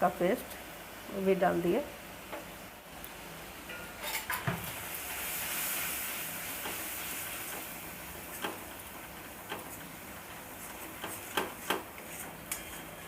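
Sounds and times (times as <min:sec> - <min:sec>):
paste sizzling in hot oil: 0:04.4 - 0:13.0.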